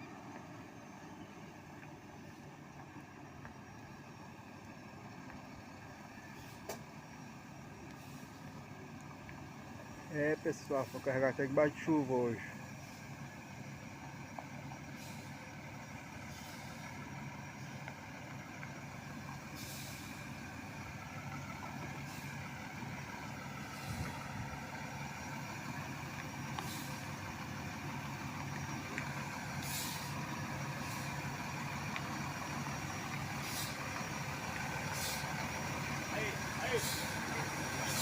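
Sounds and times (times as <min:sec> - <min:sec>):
heavy truck engine running: 0:00.0 - 0:38.0
short air hisses: 0:08.0 - 0:08.4, 0:14.9 - 0:15.4, 0:16.3 - 0:16.8, 0:19.5 - 0:20.3, 0:23.7 - 0:24.2, 0:26.6 - 0:27.1, 0:29.6 - 0:30.2, 0:30.8 - 0:31.2, 0:33.4 - 0:33.8, 0:34.8 - 0:35.4, 0:36.8 - 0:37.2.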